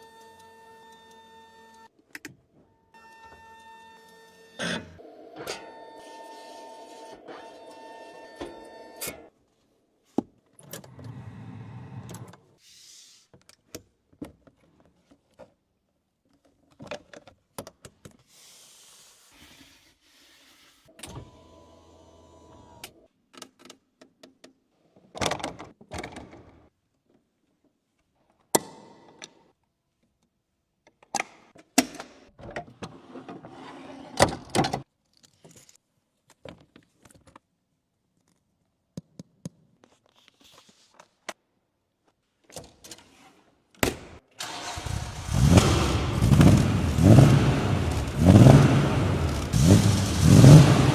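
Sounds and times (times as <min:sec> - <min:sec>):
car engine starting and revving: 0:44.4 - 0:50.9.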